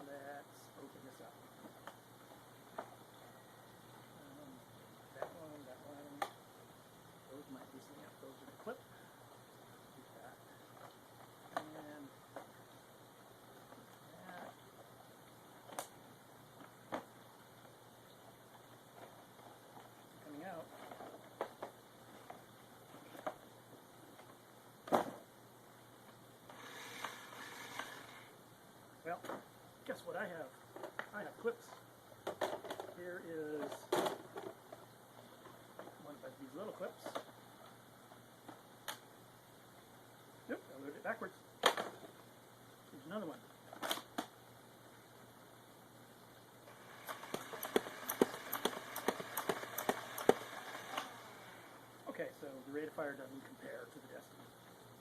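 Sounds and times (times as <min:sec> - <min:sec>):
toy blaster motor running: 0:26.5 - 0:28.3, 0:46.7 - 0:51.8.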